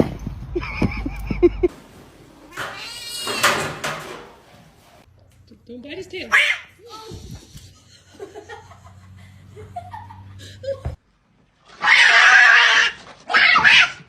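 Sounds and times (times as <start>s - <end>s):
harsh rasping animal cry: 2.5s - 3.6s, 11.7s - 14.0s.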